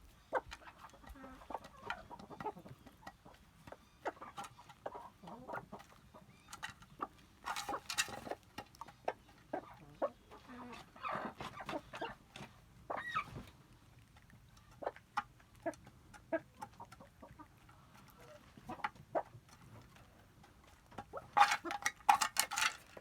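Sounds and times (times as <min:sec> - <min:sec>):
chickens clucking: 0:00.0 - 0:23.0.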